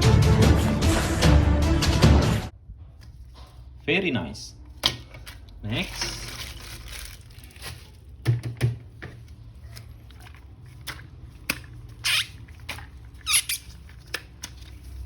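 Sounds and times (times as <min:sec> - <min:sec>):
plastic packaging crinkling: 0:05.1 - 0:08.5.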